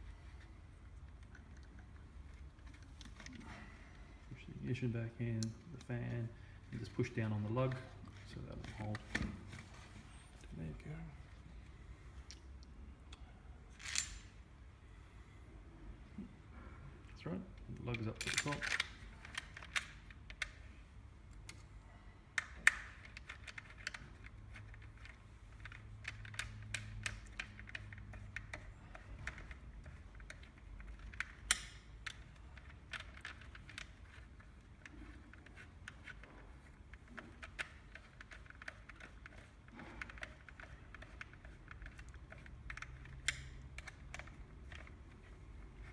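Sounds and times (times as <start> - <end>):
tool parts clicking and tapping: 17.8 - 20.7, 22.3 - 45.9.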